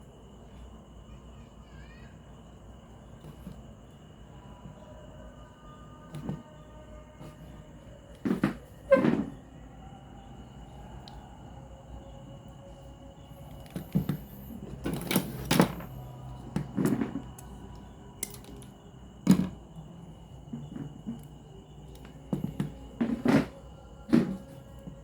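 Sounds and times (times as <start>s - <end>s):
hard objects clicking and knocking: 13.6s - 18.7s, 20.5s - 25.0s.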